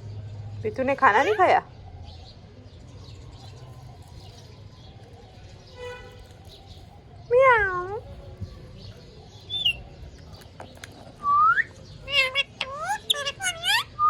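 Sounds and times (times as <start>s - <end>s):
parakeet calling: 1.0s - 1.6s, 9.4s - 9.9s, 11.2s - 14.0s.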